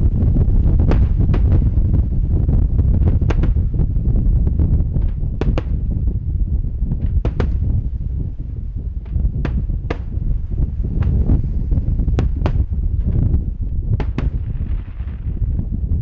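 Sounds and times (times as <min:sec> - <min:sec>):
wind rumble on microphone: 0:00.0 - 0:16.0
fireworks cracking and popping: 0:07.1 - 0:07.8, 0:09.1 - 0:15.7.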